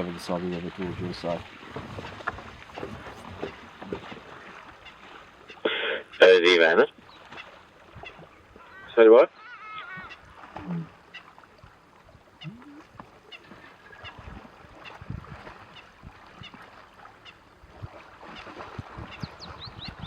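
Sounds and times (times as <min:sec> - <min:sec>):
bird calling: 0:03.3 - 0:11.4, 0:12.3 - 0:14.2, 0:18.2 - 0:20.0.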